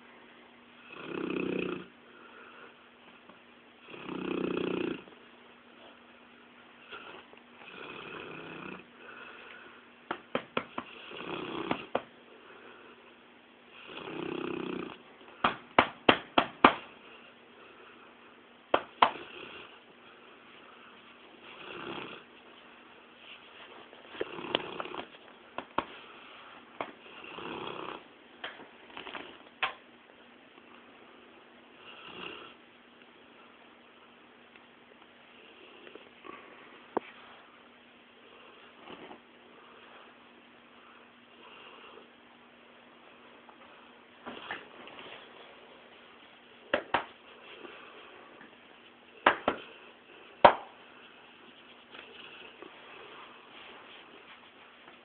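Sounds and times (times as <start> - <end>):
dog snoring: 0.8 - 1.9, 3.8 - 5.2, 6.8 - 9.6, 10.8 - 12.0, 13.7 - 15.1, 19.0 - 19.8, 21.4 - 22.3, 24.2 - 25.2, 27.0 - 28.1, 31.8 - 32.6.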